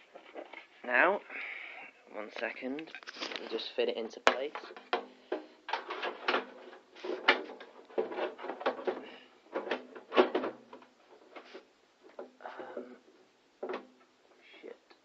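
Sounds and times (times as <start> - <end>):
clunks and rattles in computer case: 4.2 - 13.0, 13.6 - 14.2.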